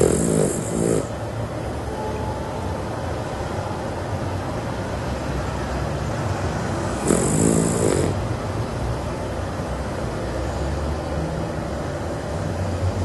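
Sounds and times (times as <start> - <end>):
person snoring: 0.0 - 1.1, 7.0 - 8.2
buzzing snore with a hiss: 0.0 - 1.2, 6.9 - 8.2.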